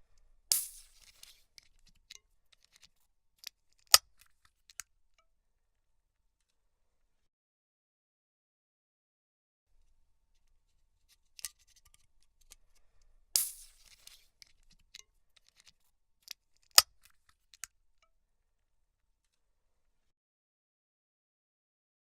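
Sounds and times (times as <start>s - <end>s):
fizzing crackles: 0.5s - 1.4s, 13.4s - 14.3s
soda can opening with hiss: 0.5s - 1.6s, 13.4s - 14.4s.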